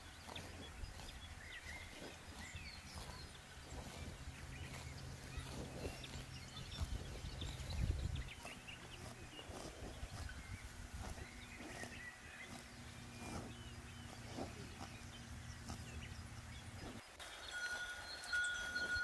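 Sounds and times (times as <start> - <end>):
cowbells clanking: 17.2 - 19.0
steady ringing bell tone: 17.3 - 19.0.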